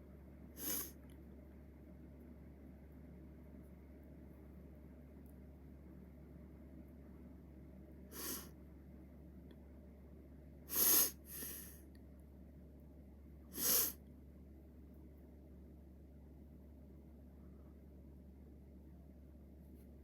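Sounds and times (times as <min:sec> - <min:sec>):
person's quick sharp breaths: 0:00.6 - 0:01.0, 0:08.1 - 0:08.6, 0:10.7 - 0:11.8, 0:13.5 - 0:14.0.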